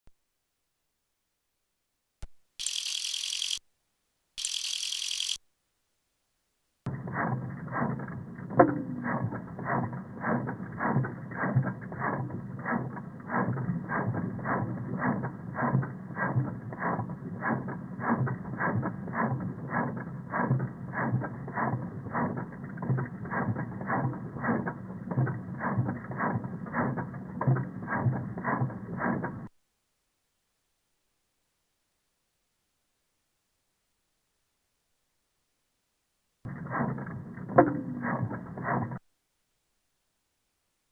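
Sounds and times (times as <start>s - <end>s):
muffled engine clatter with knock: 6.9s - 29.5s.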